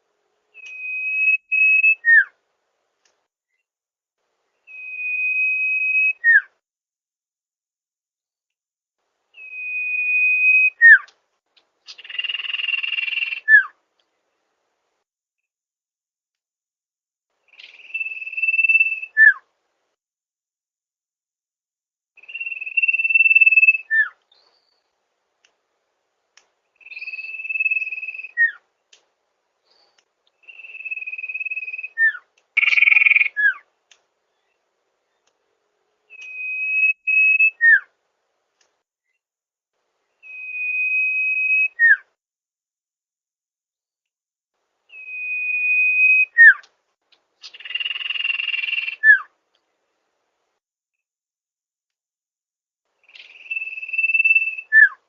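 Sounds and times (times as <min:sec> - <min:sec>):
bird whistling song: 0:00.6 - 0:02.4, 0:04.6 - 0:06.6, 0:09.4 - 0:11.1, 0:11.9 - 0:13.8, 0:17.5 - 0:19.5, 0:22.2 - 0:24.9, 0:26.8 - 0:28.6, 0:29.7 - 0:33.7, 0:36.1 - 0:38.0, 0:40.2 - 0:42.1, 0:44.9 - 0:46.7, 0:47.4 - 0:49.3, 0:53.0 - 0:55.0.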